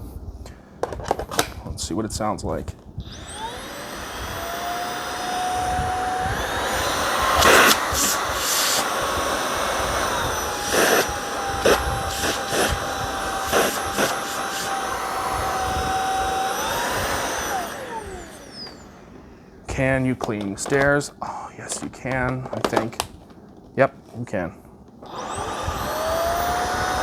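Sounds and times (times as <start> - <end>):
vacuum cleaner motor whining: 3.0 - 20.9, 25.0 - 27.0.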